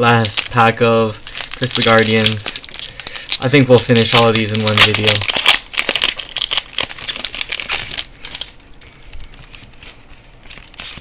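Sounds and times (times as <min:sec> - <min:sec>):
foil wrapper crinkling: 0:00.0 - 0:11.0.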